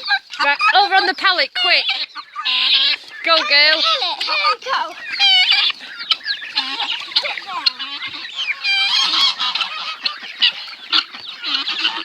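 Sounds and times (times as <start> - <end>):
geese honking: 0.0 - 12.0.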